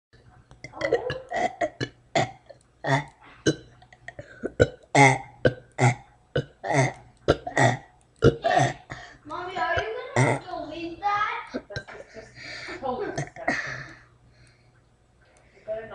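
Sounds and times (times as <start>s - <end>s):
boy burping: 0.6s - 10.6s, 11.5s - 12.0s, 13.1s - 14.0s.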